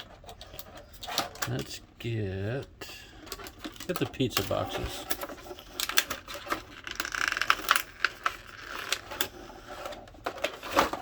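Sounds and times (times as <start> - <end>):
plastic crinkling: 3.2 - 11.0.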